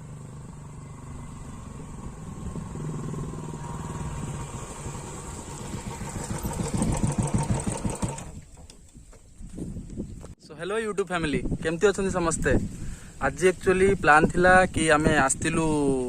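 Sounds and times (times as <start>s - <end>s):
motorcycle engine exhaust thumping: 0.0s - 8.8s.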